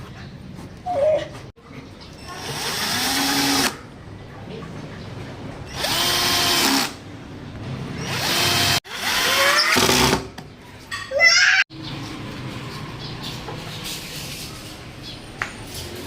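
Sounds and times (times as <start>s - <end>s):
power drill motor whine: 5.7s - 6.9s, 8.1s - 10.0s.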